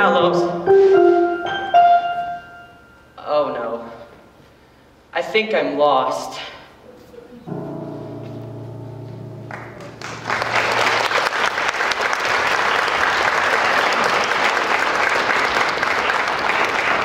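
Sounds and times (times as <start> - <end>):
keyboard chord: 0.0 - 3.2, 7.5 - 11.7
audience applause: 9.5 - 17.0.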